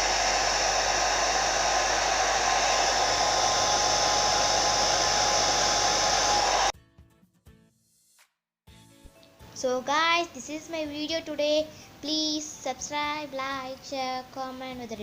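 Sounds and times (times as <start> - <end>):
hair dryer blowing: 0.0 - 6.7.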